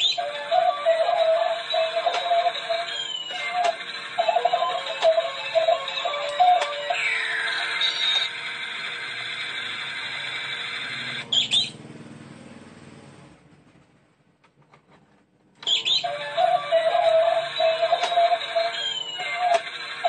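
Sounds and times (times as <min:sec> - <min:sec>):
tinny electronic toy tune: 0:15.6 - 0:19.6.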